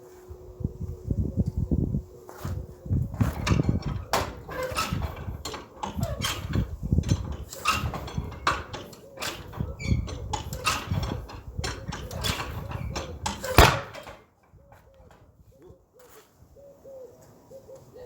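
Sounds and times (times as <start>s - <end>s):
engine turning over unevenly: 6.7s - 14.2s
engine backfire bang: 13.5s - 14.2s.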